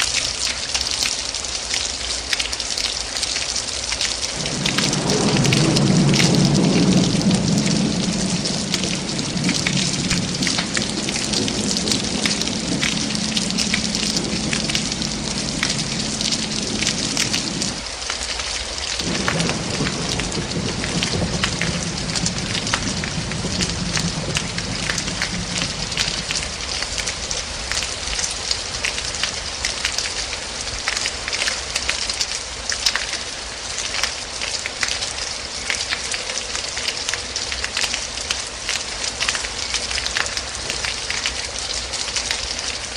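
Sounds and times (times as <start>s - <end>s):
heavy rain: 0.0s - 42.9s
rolling thunder: 4.3s - 17.8s, 19.0s - 29.9s.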